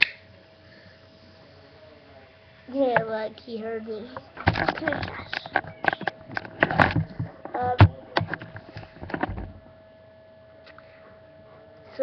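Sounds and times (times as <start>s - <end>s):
faint steady hum: 0.0s - 12.0s
sharp clicks and knocks: 4.1s - 9.5s.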